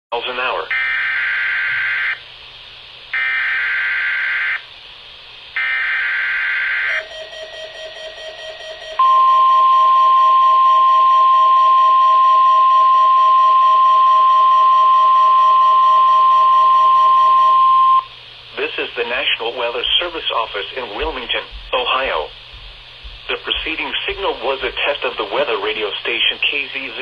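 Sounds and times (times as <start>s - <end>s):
steady warning alarm tone: 0.7s - 2.3s, 3.1s - 4.7s, 5.6s - 18.1s
quiet pulsing tone: 6.9s - 18.2s.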